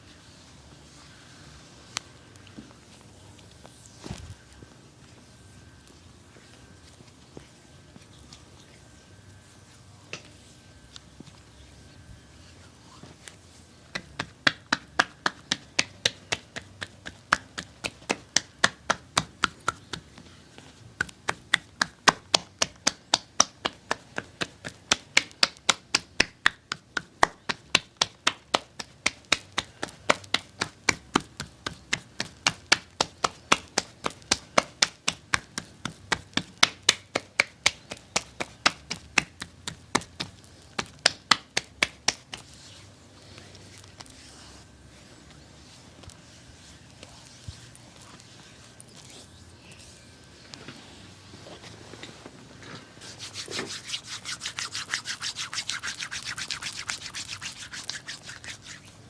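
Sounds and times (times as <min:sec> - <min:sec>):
percussive massage tapping: 0:13.9 - 0:20.3, 0:21.0 - 0:42.5, 0:53.3 - 0:58.9.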